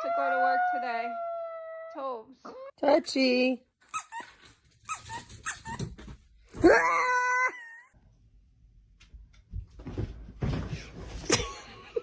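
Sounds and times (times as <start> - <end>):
dog whining and howling: 0.0 - 2.2.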